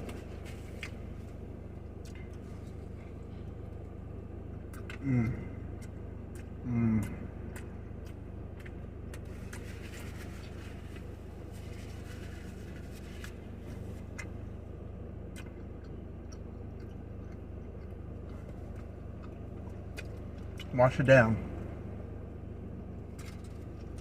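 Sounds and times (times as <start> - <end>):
person chewing food: 0.0 - 20.7, 22.8 - 24.0
car engine idling hum: 0.0 - 24.0.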